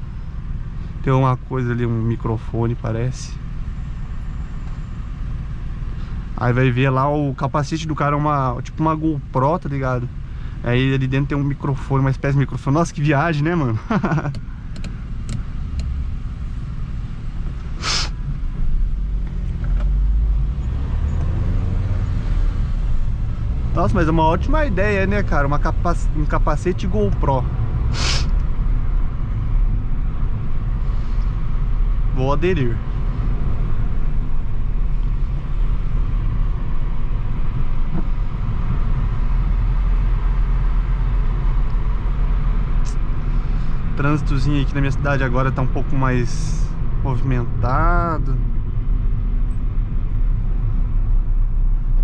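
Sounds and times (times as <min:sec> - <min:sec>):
car engine and road noise: 0:00.0 - 0:52.0
short sharp hiss: 0:17.7 - 0:18.2, 0:27.9 - 0:28.4.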